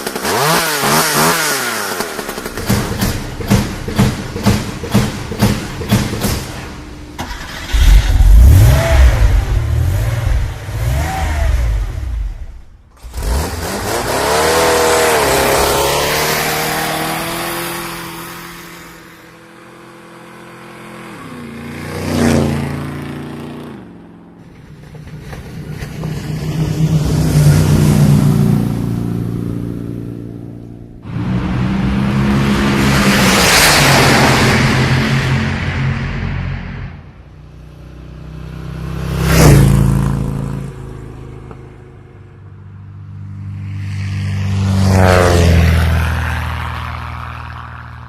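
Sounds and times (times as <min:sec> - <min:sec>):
car engine revving: 0:00.0 - 0:19.1, 0:24.5 - 0:37.4.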